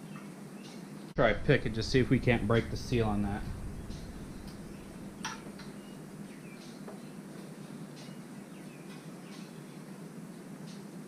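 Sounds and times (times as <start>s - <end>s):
low hum: 1.2s - 7.2s.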